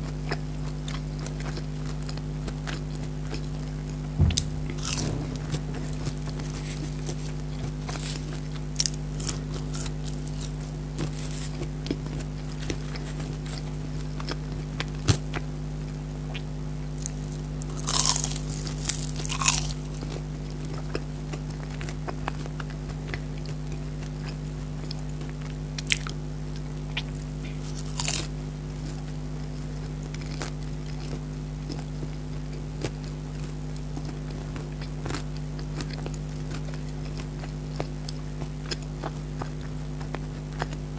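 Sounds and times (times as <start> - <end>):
crunchy chewing of fried food: 0.0 - 4.0, 4.6 - 5.8, 6.6 - 40.9
steady low hum: 2.4 - 14.2.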